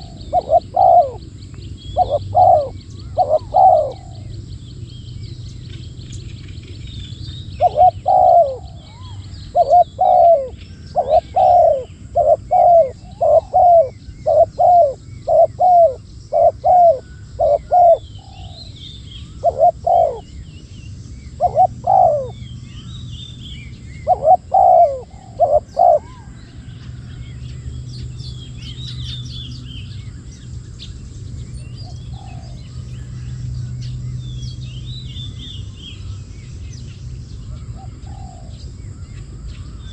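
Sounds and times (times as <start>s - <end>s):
dove cooing: 0.0s - 1.3s, 1.9s - 4.3s, 7.6s - 20.3s, 21.3s - 22.4s, 24.0s - 26.4s, 31.8s - 32.7s, 37.5s - 38.6s
small birds chirping: 0.0s - 39.9s.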